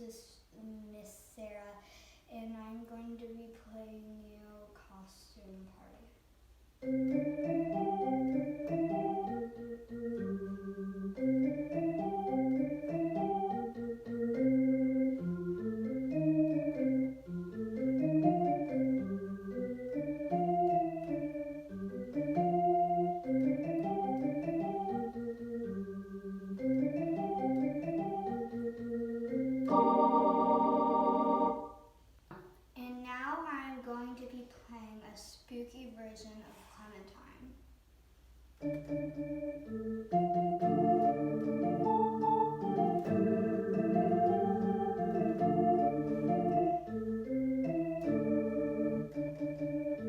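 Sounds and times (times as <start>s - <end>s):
electronic keyboard organ sound: 6.8s - 31.9s, 38.6s - 50.0s.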